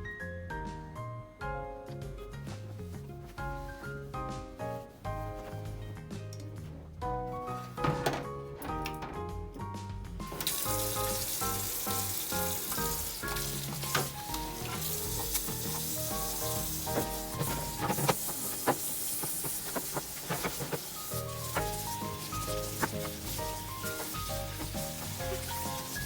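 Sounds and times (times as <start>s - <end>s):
background music: 0.0s - 26.0s
sizzling hiss with crackles: 10.4s - 26.0s.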